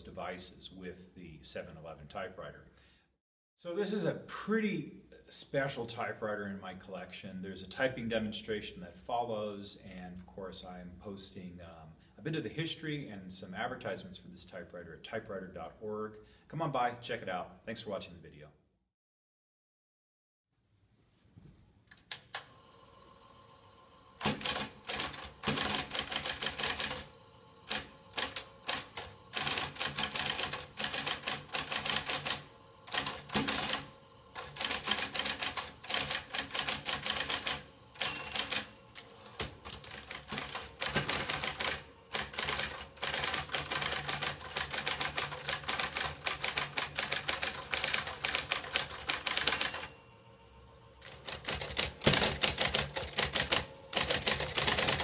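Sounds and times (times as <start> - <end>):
typewriter motor humming: 24.1 - 49.9, 51.0 - 55.0
typewriter keys clacking: 34.4 - 49.9, 51.0 - 55.0.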